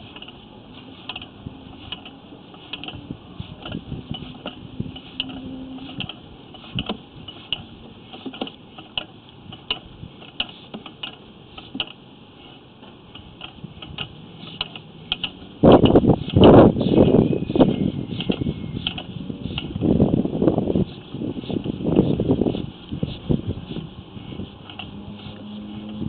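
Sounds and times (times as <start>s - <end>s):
inspection cable clicking and ticking: 0.0s - 12.0s, 12.8s - 19.9s, 24.3s - 26.0s.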